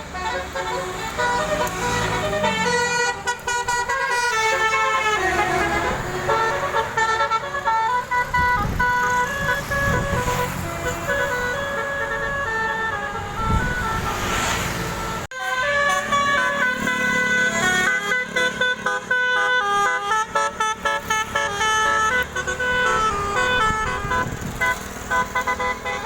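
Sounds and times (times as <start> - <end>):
multi-trumpet musical horn: 0.0 - 26.0.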